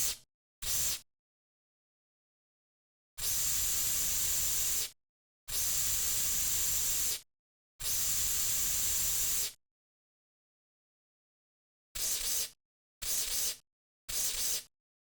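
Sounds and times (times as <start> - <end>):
aerosol spray can hissing: 12.0 - 13.6, 14.2 - 14.7.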